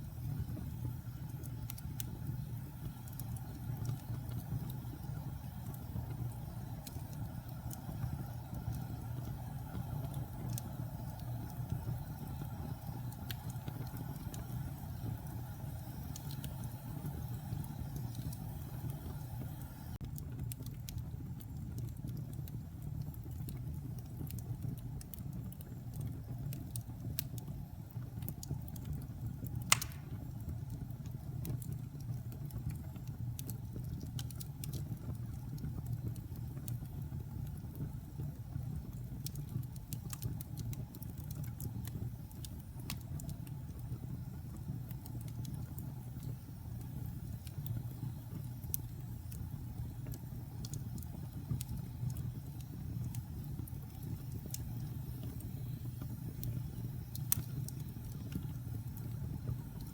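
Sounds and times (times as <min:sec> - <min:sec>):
fire crackling: 0:00.0 - 0:59.9
fire rumbling: 0:00.0 - 0:59.9
loud pop of burning log: 0:29.7 - 0:30.4.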